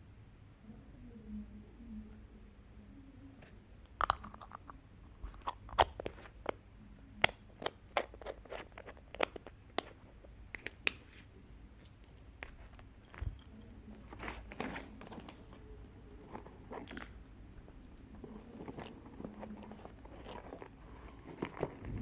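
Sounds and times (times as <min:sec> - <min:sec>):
paper and packaging crinkling: 0:12.4 - 0:22.0.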